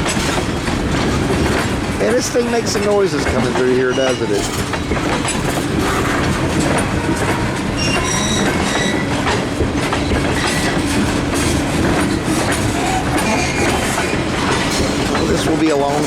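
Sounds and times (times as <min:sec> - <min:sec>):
train wheels rumbling and clattering: 0:00.0 - 0:16.0
high-pitched wheel squeals: 0:03.8 - 0:09.2, 0:12.6 - 0:15.5.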